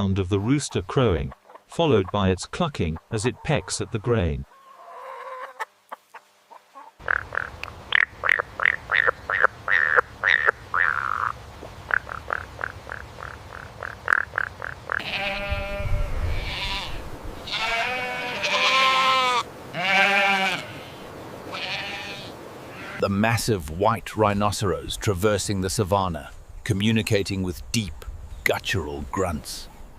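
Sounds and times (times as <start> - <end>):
chicken clucking: 2.9 - 7.5
sheep bleating: 15.0 - 23.0.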